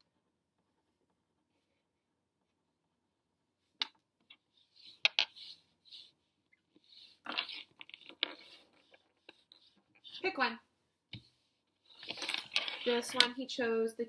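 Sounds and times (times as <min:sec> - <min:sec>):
scraping and rustling: 0:04.2 - 0:10.5, 0:11.2 - 0:13.4.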